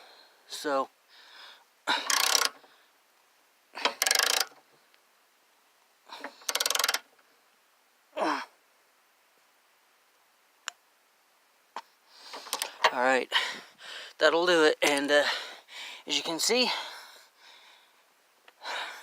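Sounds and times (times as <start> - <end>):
ratchet clicking: 2.0 - 2.6, 3.8 - 4.6, 6.4 - 7.1
person grunting with effort: 8.2 - 8.6.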